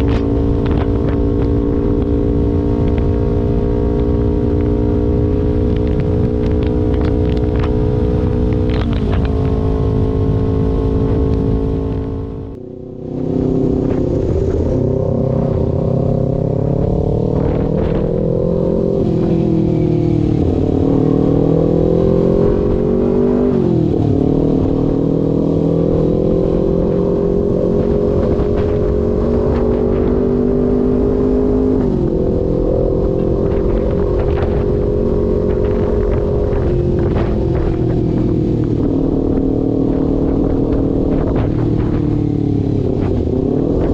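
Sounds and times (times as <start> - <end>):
motorcycle engine revving: 0.0 - 43.9.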